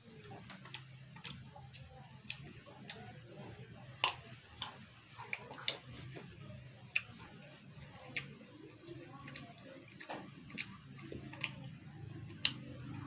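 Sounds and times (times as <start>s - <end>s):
wet mouth clicks: 4.0s - 13.0s.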